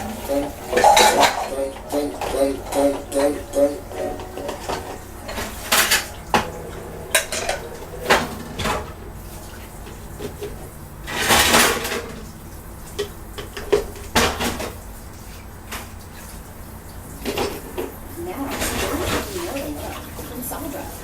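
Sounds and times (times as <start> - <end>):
dishes and cutlery clattering: 0.0 - 12.3, 17.2 - 20.3.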